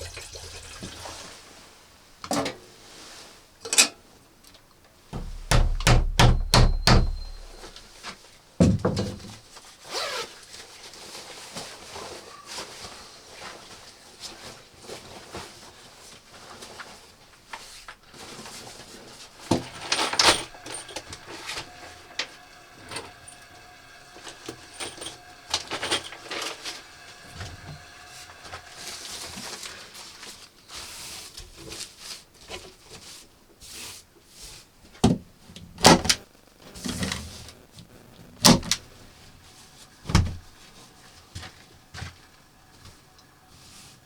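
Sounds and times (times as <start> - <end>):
objects knocking and clattering: 5.2 - 7.9.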